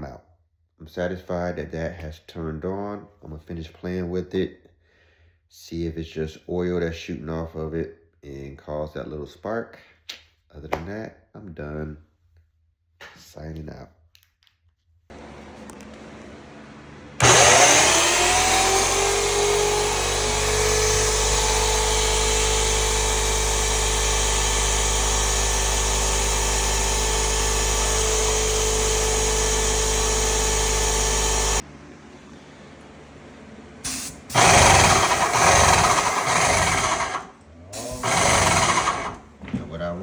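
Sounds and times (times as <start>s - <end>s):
paint sprayer motor running: 17.2s - 31.6s, 33.8s - 39.4s.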